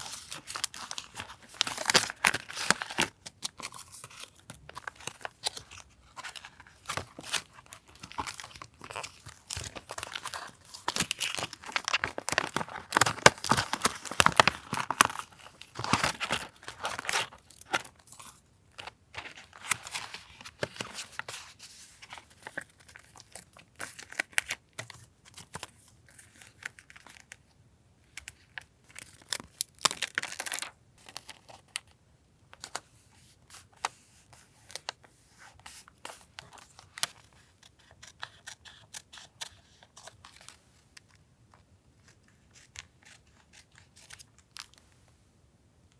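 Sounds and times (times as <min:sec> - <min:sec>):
paper tearing and crinkling: 0:04.8 - 0:18.2.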